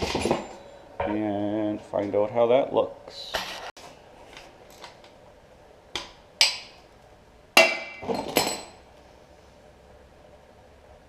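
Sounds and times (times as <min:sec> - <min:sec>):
metal tools clanking: 0:07.7 - 0:08.8.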